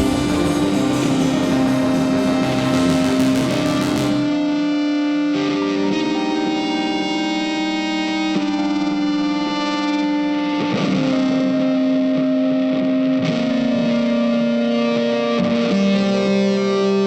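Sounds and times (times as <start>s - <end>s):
distorted electric guitar notes: 0.0s - 17.0s.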